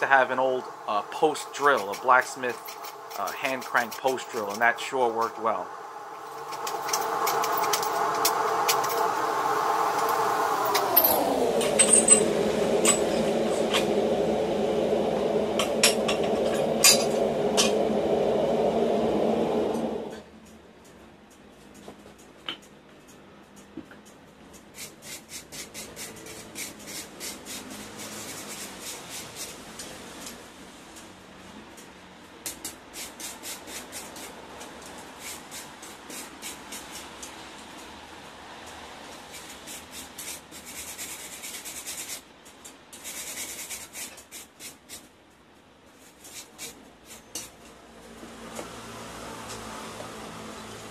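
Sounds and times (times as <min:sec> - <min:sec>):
hand file rasping on steel: 0:24.6 - 0:29.6.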